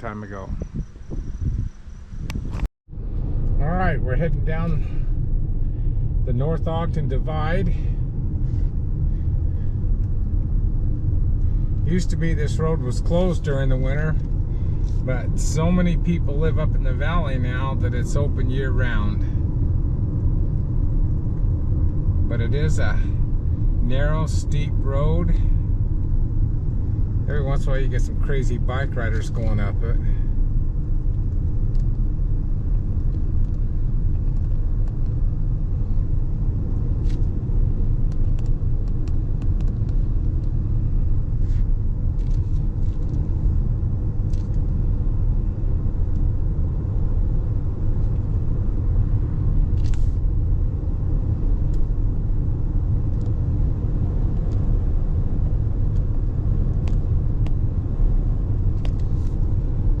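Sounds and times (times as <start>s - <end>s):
road and engine rumble in car: 0.0s - 60.0s.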